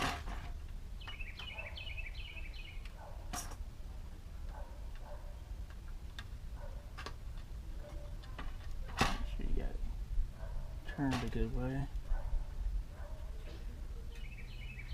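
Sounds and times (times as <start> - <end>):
bird chirping: 0.9 - 3.3, 13.0 - 14.9.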